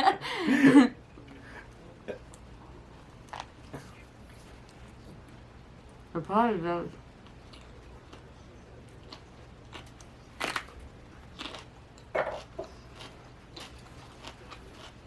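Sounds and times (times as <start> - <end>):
chewing with crisp crunches: 7.2 - 15.0.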